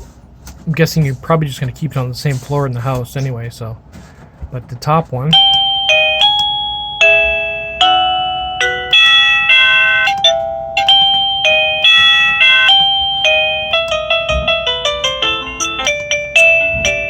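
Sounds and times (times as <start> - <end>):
doorbell chime melody: 5.3 - 17.0.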